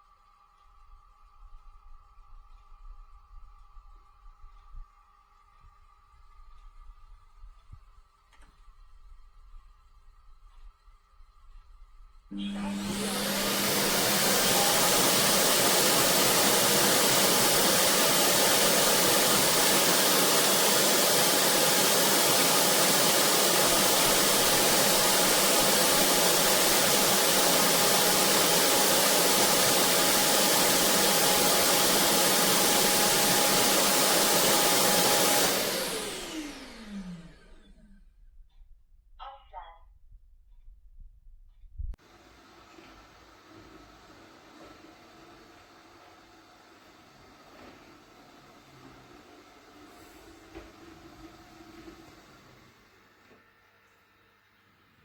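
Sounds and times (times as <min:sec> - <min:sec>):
vacuum motor whining: 0:12.3 - 0:38.0, 0:42.1 - 0:53.9.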